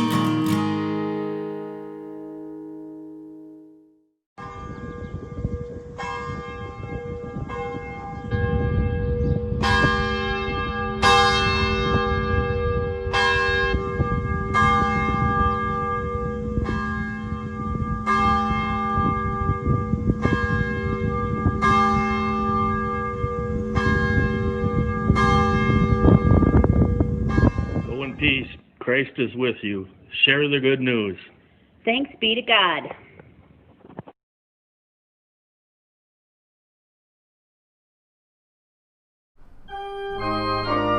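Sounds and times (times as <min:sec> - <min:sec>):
church bell tolling: 0:04.4 - 0:28.1, 0:39.4 - 0:40.9.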